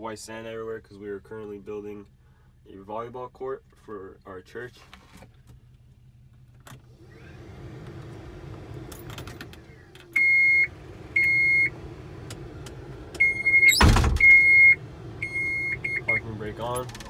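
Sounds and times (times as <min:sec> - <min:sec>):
low engine hum: 0:05.4 - 0:17.0
electronic warning beeps: 0:10.2 - 0:11.8, 0:13.2 - 0:16.3
loud clunk: 0:13.7 - 0:14.4.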